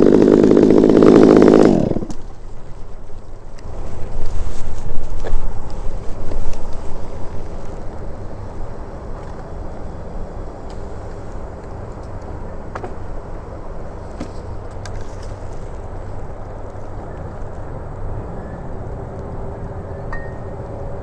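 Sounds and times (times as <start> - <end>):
crane engine rumbling: 0.0 - 21.0.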